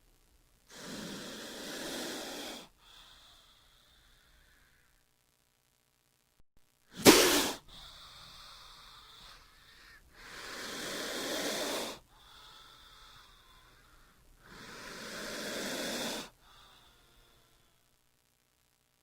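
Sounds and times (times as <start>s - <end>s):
snake hissing: 0.7s - 4.8s, 6.9s - 17.5s.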